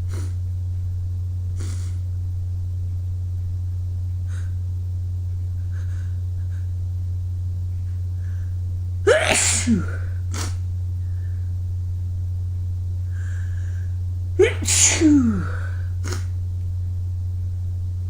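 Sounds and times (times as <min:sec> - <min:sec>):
person sniffing and breathing: 0:00.0 - 0:00.4, 0:01.6 - 0:02.0, 0:08.2 - 0:11.5, 0:13.1 - 0:16.4
steady low hum: 0:00.0 - 0:18.0
sharp inhale: 0:01.6 - 0:02.0, 0:13.1 - 0:16.3.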